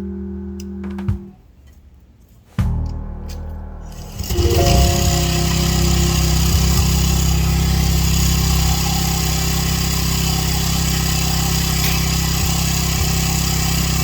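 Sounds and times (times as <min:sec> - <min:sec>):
pressure washer engine running: 0:04.2 - 0:14.0.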